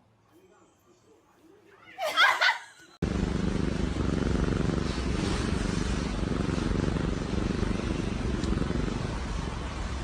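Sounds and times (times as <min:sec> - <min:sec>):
cat purring: 0:03.0 - 0:10.0.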